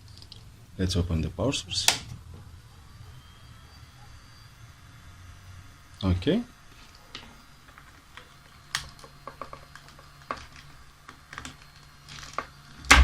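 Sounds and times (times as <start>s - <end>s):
faint low hum: 0.0s - 13.0s
clicks of electrical gear: 1.8s - 2.2s, 6.8s - 13.0s.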